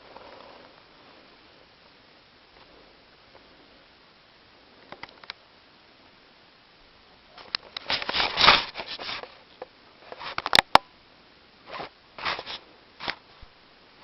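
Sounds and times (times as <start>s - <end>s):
cat scratching and rustling: 7.8s - 9.4s.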